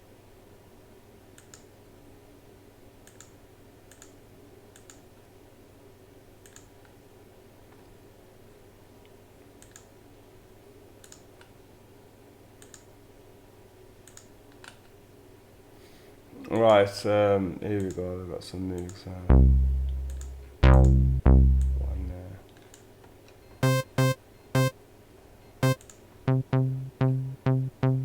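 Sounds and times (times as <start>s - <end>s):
computer mouse clicks: 1.4s - 1.7s, 3.0s - 4.1s, 4.7s - 5.0s, 6.4s - 6.7s, 9.6s - 9.9s, 12.6s - 12.9s, 14.0s - 14.8s
steady low hum: 19.3s - 22.4s.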